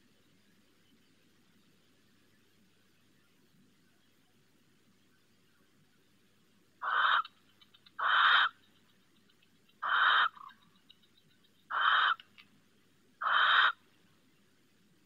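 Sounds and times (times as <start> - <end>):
barn owl screeching: 6.8 - 7.3, 8.0 - 8.6, 9.8 - 10.6, 11.7 - 12.2, 13.2 - 13.8.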